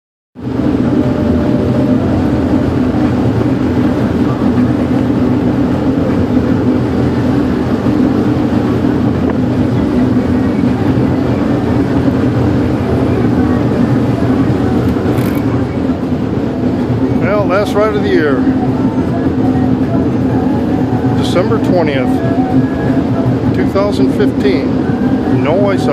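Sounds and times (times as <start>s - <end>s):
motorboat engine droning: 0.4s - 25.9s.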